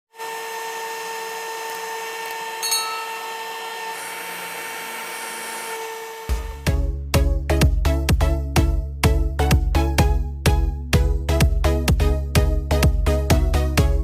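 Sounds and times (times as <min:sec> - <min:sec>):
small electric motor whining: 0:00.1 - 0:06.7
music: 0:06.3 - 0:14.0.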